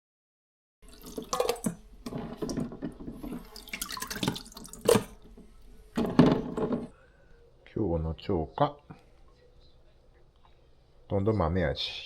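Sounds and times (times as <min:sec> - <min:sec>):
water splashing and dripping: 0:00.8 - 0:05.3.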